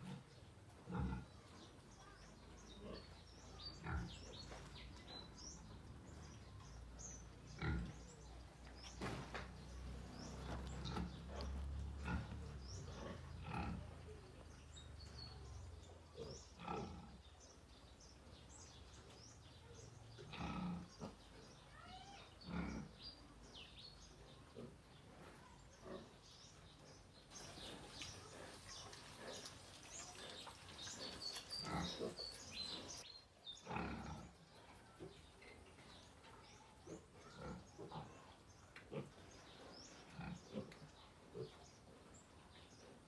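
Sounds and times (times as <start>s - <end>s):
piglets grunting: 0.9s - 1.4s, 7.5s - 8.0s, 10.3s - 14.0s, 16.2s - 17.3s, 20.2s - 21.6s, 22.2s - 23.0s, 27.3s - 33.0s, 33.6s - 34.4s, 36.9s - 38.3s.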